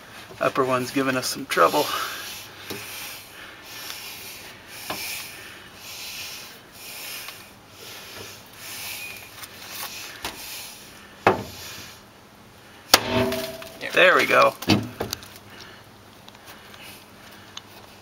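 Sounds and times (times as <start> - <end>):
sharp knocks on metal: 13.0 - 13.9.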